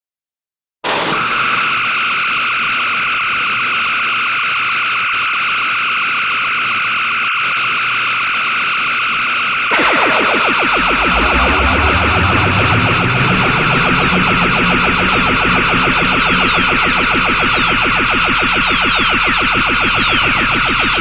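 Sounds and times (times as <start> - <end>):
falling electronic sweeps: 9.7 - 21.0
pulsing laser buzz: 9.7 - 21.0
low rumble: 9.8 - 20.9.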